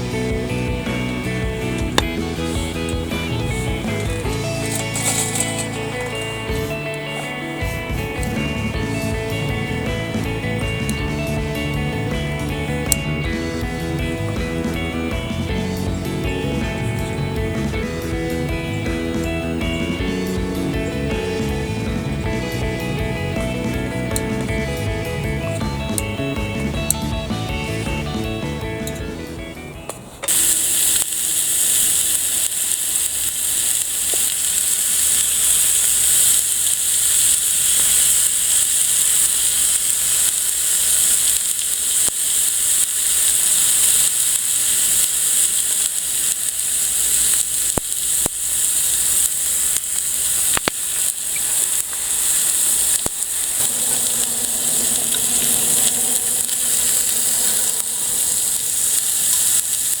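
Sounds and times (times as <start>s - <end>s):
food sizzling in a pan: 0.0s - 21.6s, 30.3s - 60.0s
oil popping and spitting: 30.3s - 60.0s.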